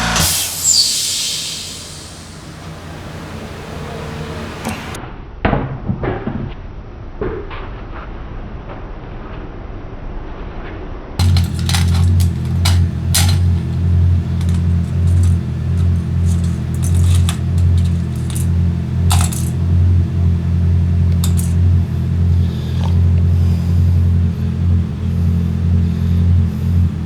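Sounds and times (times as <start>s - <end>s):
motorcycle engine running: 0.0s - 5.0s, 11.2s - 27.0s
sharp clicks: 11.2s - 23.6s.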